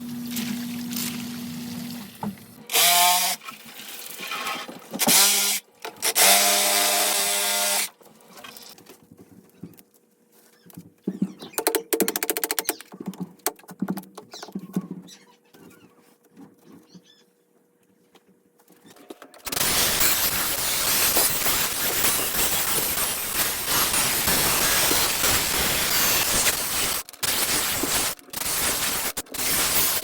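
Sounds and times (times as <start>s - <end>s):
rapid clicks and ticks: 11.6s - 14.2s, 19.4s - 30.0s
power tool running in bursts: 19.5s - 30.0s.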